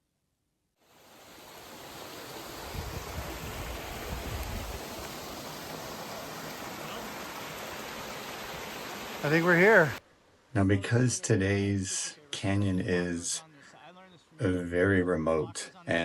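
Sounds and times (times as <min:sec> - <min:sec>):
running water rushing: 0:00.8 - 0:10.0.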